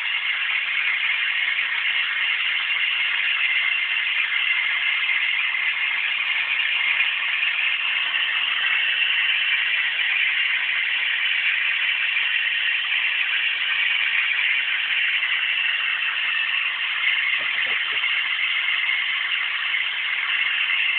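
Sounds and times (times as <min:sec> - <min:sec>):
vacuum cleaner running: 0:15.4 - 0:19.6.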